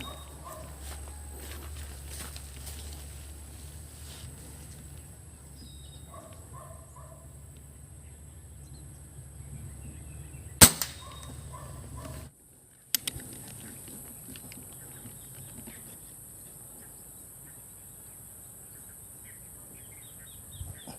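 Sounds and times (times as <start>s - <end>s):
air rifle shot: 10.6s - 11.5s
quick sharp clicks: 12.9s - 13.6s.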